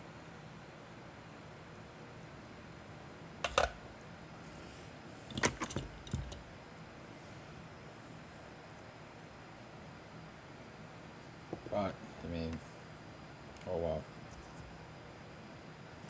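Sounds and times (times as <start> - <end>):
clicks and knocks: 3.5 - 3.8.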